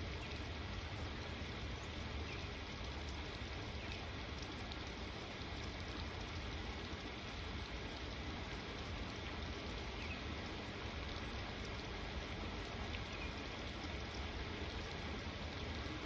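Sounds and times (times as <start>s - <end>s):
steady rain falling: 0.0s - 16.0s.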